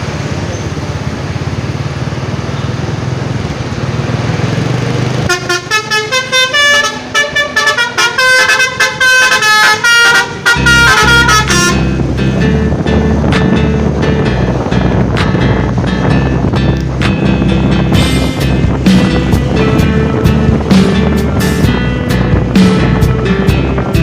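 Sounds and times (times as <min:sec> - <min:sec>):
low engine rumble: 0:00.0 - 0:24.0
musical horn playing a tune: 0:05.3 - 0:12.6.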